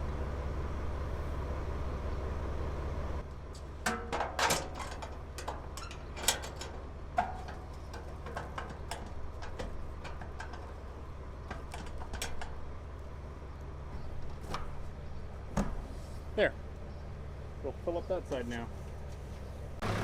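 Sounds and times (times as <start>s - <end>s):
farm machinery humming: 0.0s - 20.0s
clicks and knocks of metal parts: 3.6s - 12.7s.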